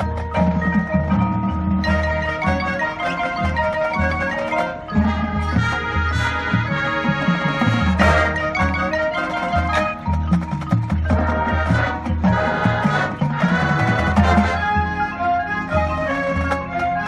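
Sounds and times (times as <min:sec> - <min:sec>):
marching band playing: 0:00.0 - 0:17.0
marimba and glockenspiel: 0:00.0 - 0:17.0
low bass notes: 0:03.4 - 0:17.0.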